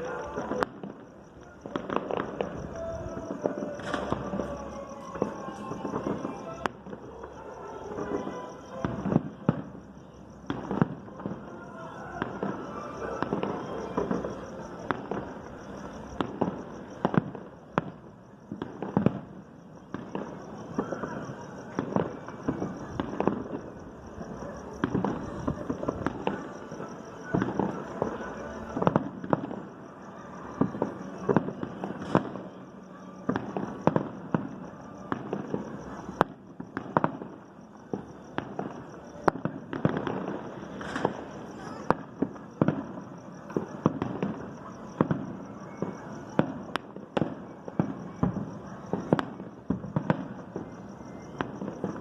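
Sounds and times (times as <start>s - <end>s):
firecrackers popping and banging: 0.0s - 7.1s, 8.8s - 11.5s, 30.6s - 32.5s, 33.2s - 45.8s.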